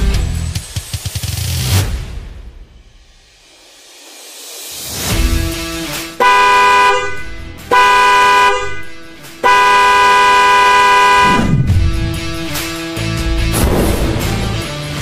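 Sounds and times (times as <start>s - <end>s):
car horn blasts: 6.2s - 11.7s.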